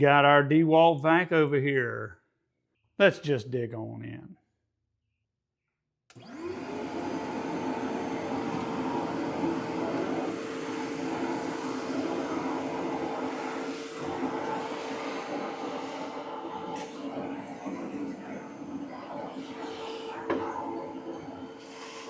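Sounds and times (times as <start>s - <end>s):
shop vacuum motor whine: 6.1s - 22.0s.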